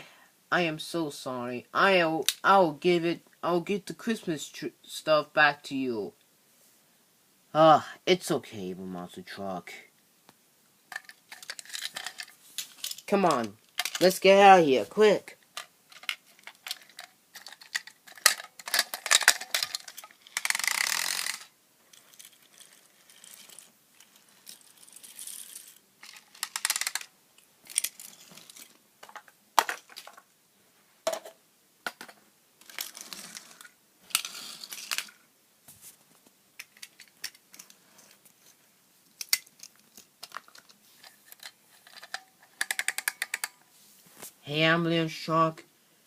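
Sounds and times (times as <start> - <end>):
toy vehicles clicking and clattering: 10.9 - 14.4, 15.4 - 30.2, 31.9 - 35.2, 36.6 - 38.3, 39.1 - 43.6.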